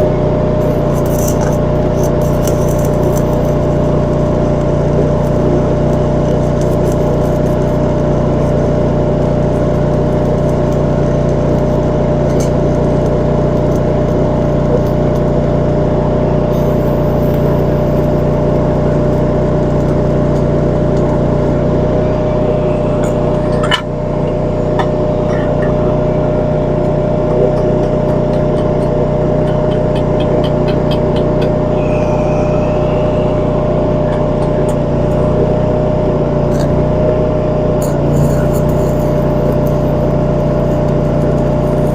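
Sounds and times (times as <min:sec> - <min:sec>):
welding generator engine running: 0:00.0 - 0:41.9.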